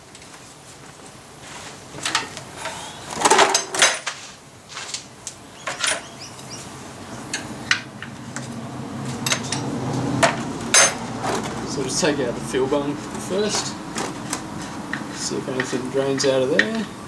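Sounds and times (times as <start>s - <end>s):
hand tools knocking and clinking: 3.2s - 4.2s, 5.7s - 6.1s, 9.1s - 17.0s.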